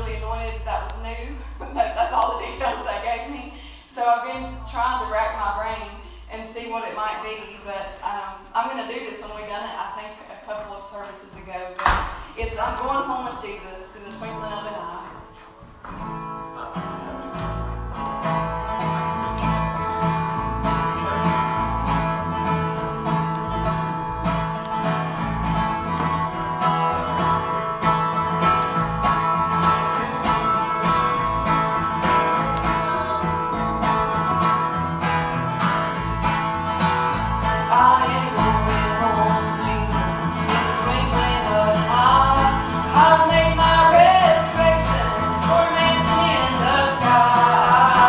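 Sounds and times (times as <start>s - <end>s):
plucked acoustic strings: 14.2s - 48.0s.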